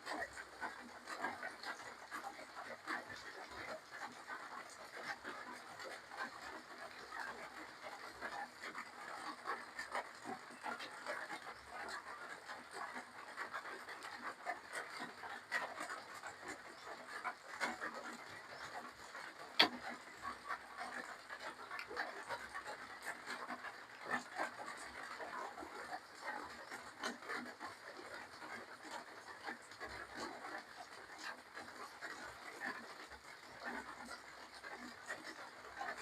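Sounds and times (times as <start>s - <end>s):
lip-smacking: 19.6s - 20.0s.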